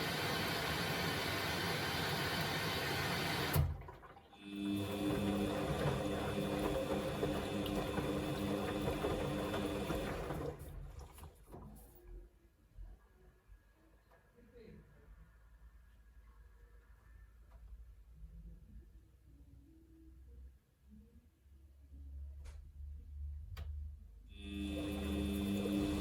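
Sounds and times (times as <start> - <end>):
pump humming with water: 0.0 - 11.4, 24.3 - 26.0
washing machine water rushing: 0.0 - 11.8, 24.4 - 26.0.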